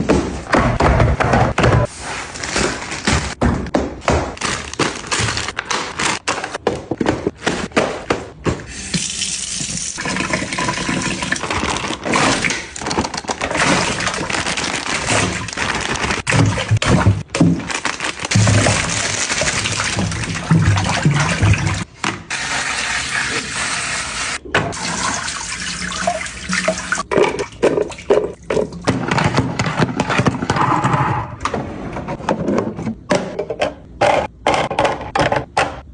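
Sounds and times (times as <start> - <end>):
water running and pouring: 8.9 - 11.8, 18.6 - 28.4.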